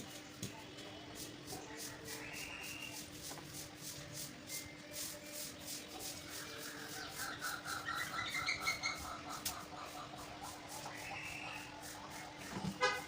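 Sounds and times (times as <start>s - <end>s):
rhythmic scratchy rubbing: 1.2s - 13.0s
bird chirping: 4.5s - 13.0s.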